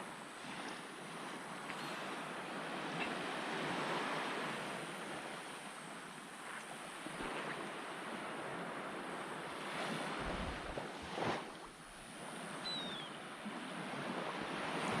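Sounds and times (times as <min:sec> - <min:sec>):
ocean surf washing: 0:06.8 - 0:15.0
wind on microphone: 0:09.6 - 0:11.7.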